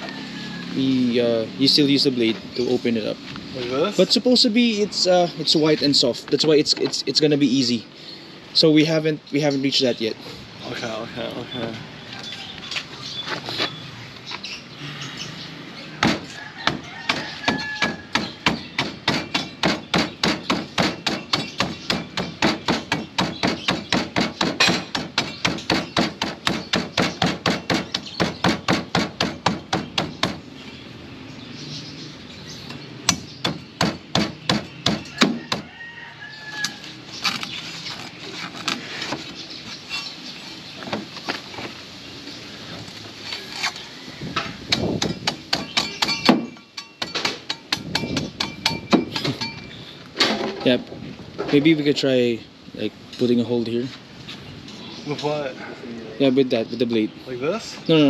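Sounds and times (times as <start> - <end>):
machete chopping coconut husk: 16.0 - 30.4, 33.1 - 35.7.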